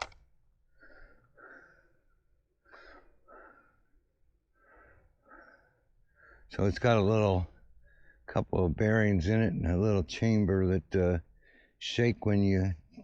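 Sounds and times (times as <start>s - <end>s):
sharp click: 0.0s - 0.2s
man breathing heavily: 0.7s - 6.5s, 7.8s - 8.3s, 11.4s - 11.8s.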